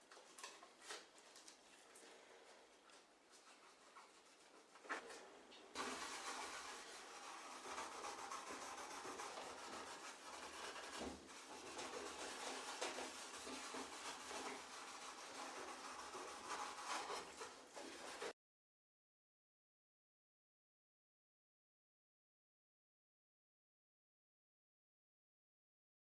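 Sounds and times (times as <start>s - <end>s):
abrasive scrubbing on sheet metal: 5.8s - 18.4s.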